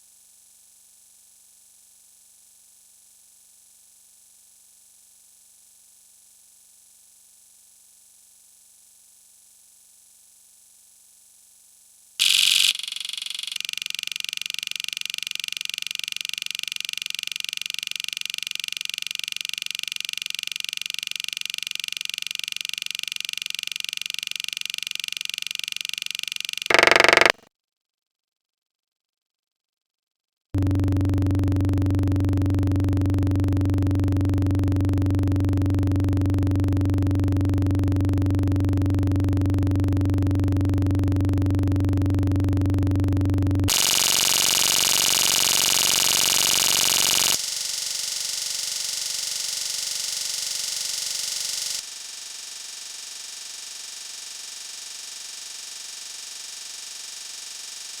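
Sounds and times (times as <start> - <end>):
loud low hum: 30.6 - 44.1.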